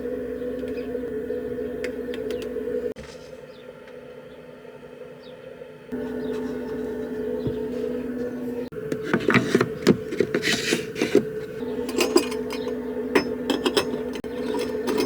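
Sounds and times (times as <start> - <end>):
steady mechanical hum: 0.0 - 15.0
objects being handled: 6.0 - 15.0.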